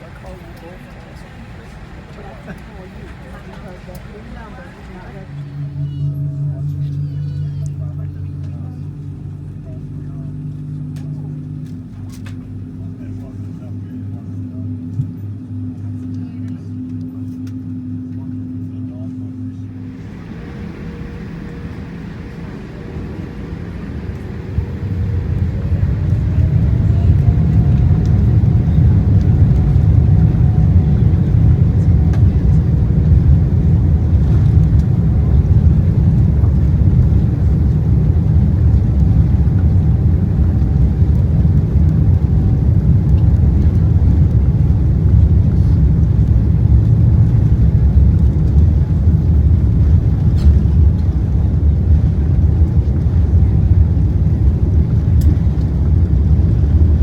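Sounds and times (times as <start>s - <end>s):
jet engines spooling up: 0.0s - 6.4s, 19.7s - 57.0s
rising engine whine: 0.0s - 15.2s, 19.4s - 57.0s.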